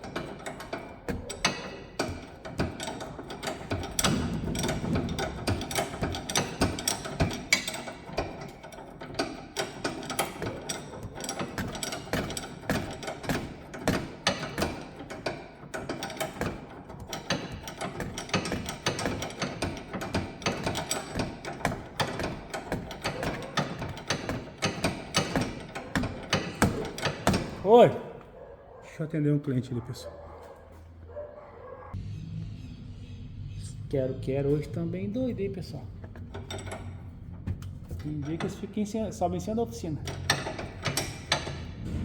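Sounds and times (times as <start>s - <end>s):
ratchet wrench clicking: 0.0s - 27.6s, 40.0s - 41.8s.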